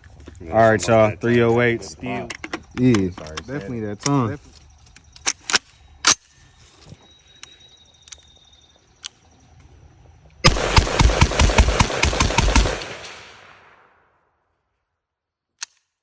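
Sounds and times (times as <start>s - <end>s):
gunshot echoes: 10.5s - 13.8s
rapid rifle gunshots: 10.5s - 13.9s
metallic rifle handling clicks: 15.6s - 16.0s.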